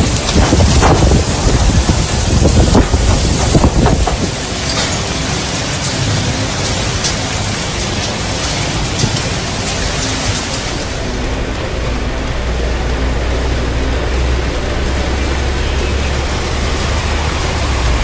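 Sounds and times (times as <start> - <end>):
low rumble: 0.0 - 7.4
heavy rain pouring: 0.0 - 18.0.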